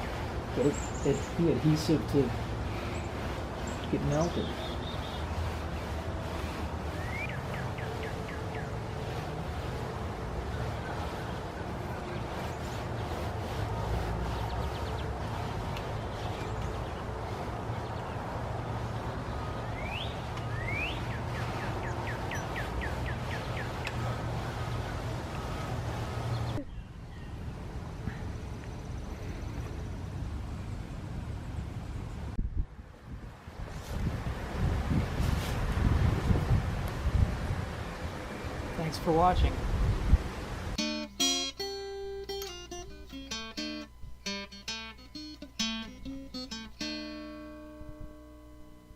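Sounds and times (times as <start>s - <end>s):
songbird singing: 0.0s - 9.4s, 14.1s - 32.4s, 40.7s - 48.9s
acoustic guitar plucked notes: 40.8s - 48.9s.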